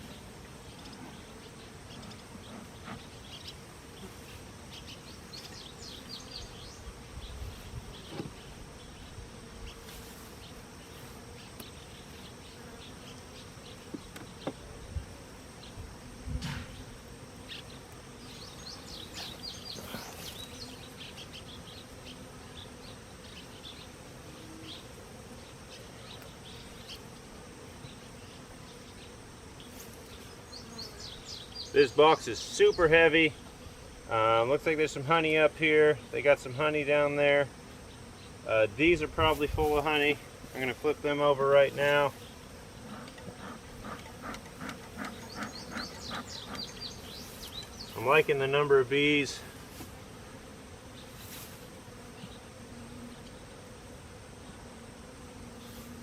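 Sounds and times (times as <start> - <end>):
honeybees buzzing: 0.0 - 56.0.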